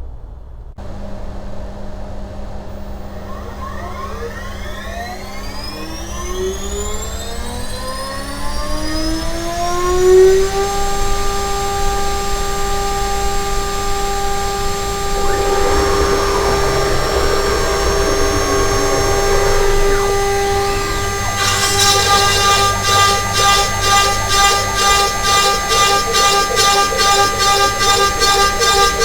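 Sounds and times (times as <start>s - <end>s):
regular pulsing: 1.8s - 29.0s
router spindle whining: 2.1s - 29.0s
end mill rasping through plywood: 8.9s - 29.0s.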